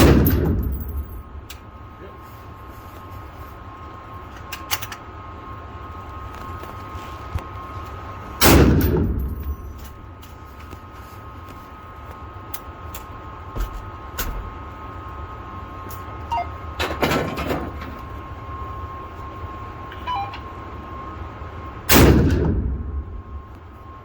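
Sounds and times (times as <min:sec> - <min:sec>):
rifle shot: 0:00.0 - 0:01.1, 0:08.4 - 0:09.8, 0:21.9 - 0:23.2
sharp gunshot reports: 0:08.4 - 0:09.6, 0:21.9 - 0:23.4.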